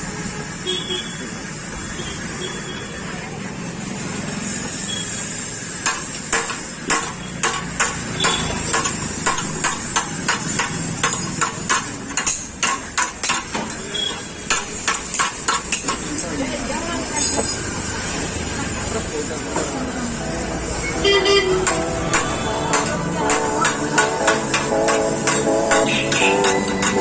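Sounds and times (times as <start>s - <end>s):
hammer blows on steel frame: 21.4s - 27.0s.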